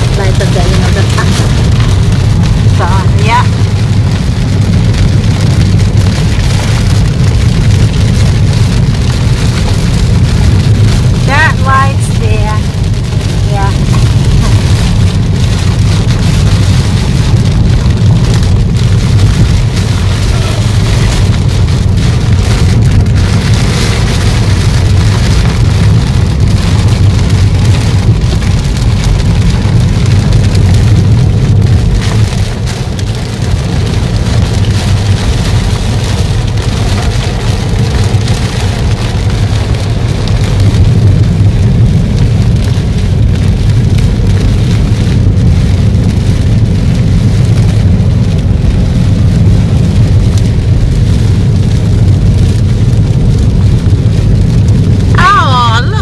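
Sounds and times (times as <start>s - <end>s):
heavy rain hitting a car: 0.0s - 56.0s
low road and engine rumble: 0.0s - 56.0s.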